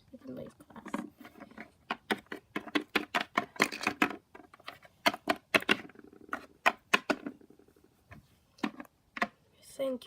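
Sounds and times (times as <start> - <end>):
plastic toys clicking on hard surface: 0.8 - 7.8.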